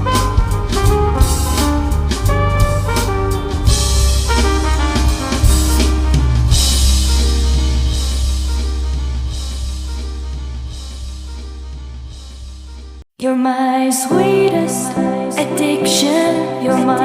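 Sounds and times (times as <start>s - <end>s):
background music with drums and bass: 0.0s - 13.0s.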